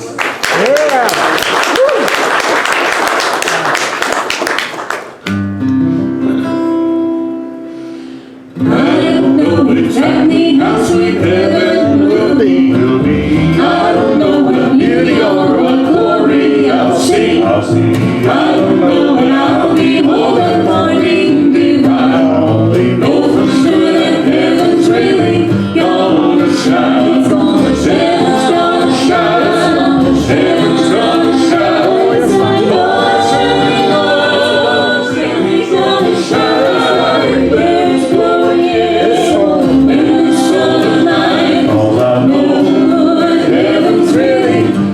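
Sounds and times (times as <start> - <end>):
strummed accompaniment: 5.2 - 44.9
group singing in harmony: 7.8 - 44.9.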